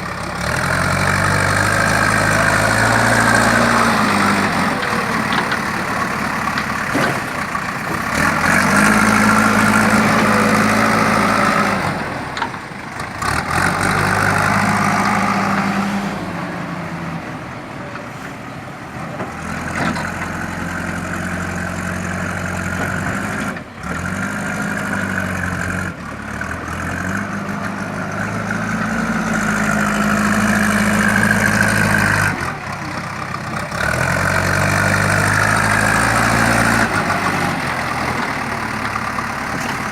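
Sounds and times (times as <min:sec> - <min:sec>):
diesel engine revving: 0:00.0 - 0:39.9.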